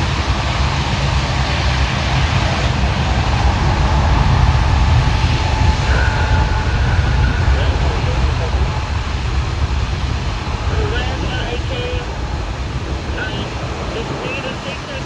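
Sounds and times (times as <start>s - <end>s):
jet engines roaring: 0.0s - 15.0s.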